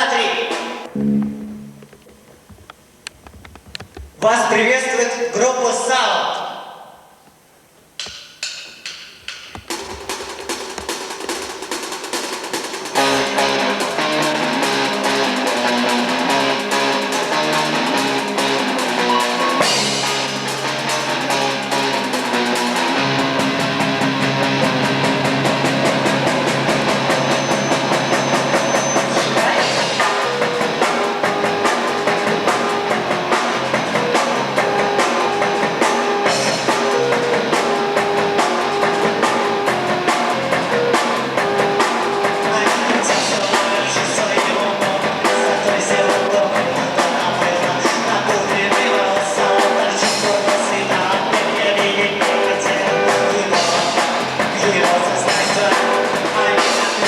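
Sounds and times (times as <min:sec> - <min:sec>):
live rock band playing: 0:00.4 - 0:02.2, 0:11.8 - 0:57.0.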